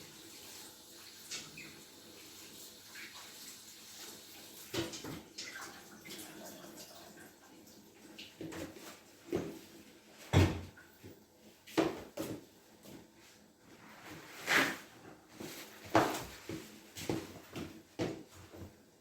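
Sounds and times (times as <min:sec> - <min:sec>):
kitchen knocks and clunks: 0:10.3 - 0:10.8, 0:11.7 - 0:12.5, 0:15.9 - 0:18.8.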